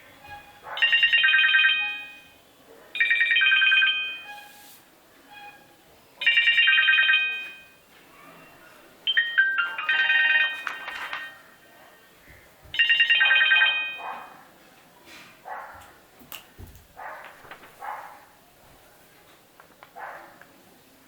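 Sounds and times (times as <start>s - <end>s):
phone ringtone melody: 0.2s - 2.4s, 3.0s - 4.6s, 6.2s - 7.8s, 9.1s - 11.4s, 12.8s - 14.0s.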